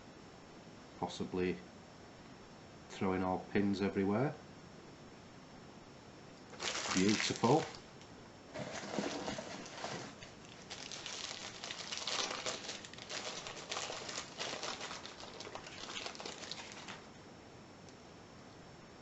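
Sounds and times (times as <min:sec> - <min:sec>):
packaging crinkling and rustling: 0:06.5 - 0:07.9, 0:08.5 - 0:17.1.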